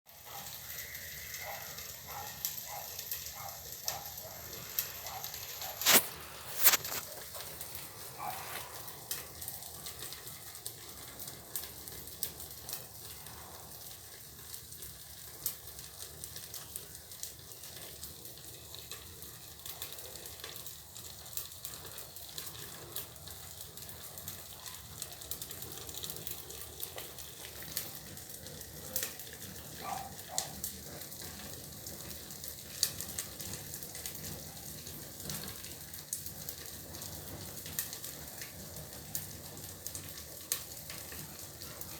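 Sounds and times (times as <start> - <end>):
steady hiss: 0.1 - 14.1
fire crackling: 0.1 - 41.9
sharp pops: 4.8 - 7.3.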